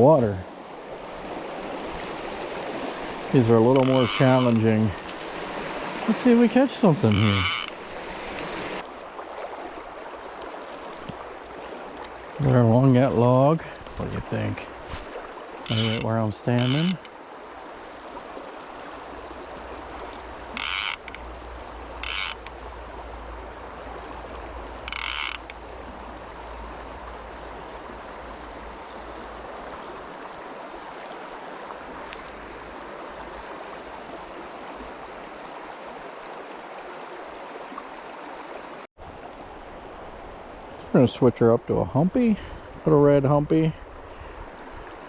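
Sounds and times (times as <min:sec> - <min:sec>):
mountain stream rushing: 0:00.0 - 0:40.9
fly reel ratchet clicking: 0:03.8 - 0:04.6, 0:07.1 - 0:07.8, 0:15.7 - 0:17.1, 0:20.6 - 0:21.2, 0:22.0 - 0:22.6, 0:24.9 - 0:25.6.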